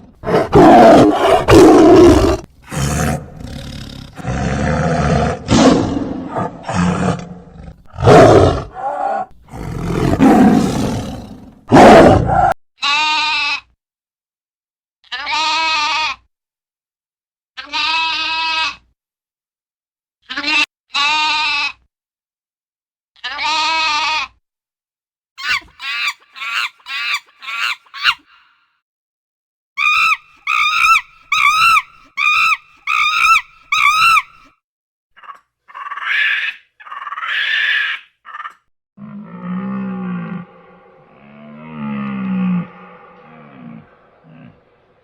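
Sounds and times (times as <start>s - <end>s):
farm animal bleats: 12.8s - 13.8s, 15.0s - 16.3s, 17.6s - 18.9s, 20.3s - 21.9s, 23.2s - 24.4s
low drawn-out animal call: 35.2s - 45.0s.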